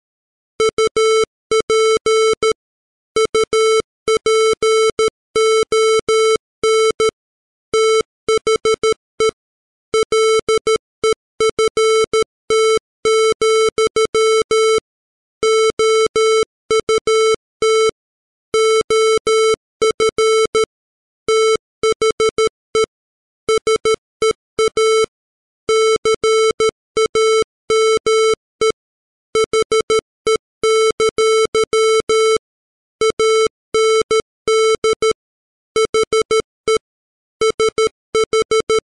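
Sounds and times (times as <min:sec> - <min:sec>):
morse code square-wave tone: 0:37.4 - 0:38.8.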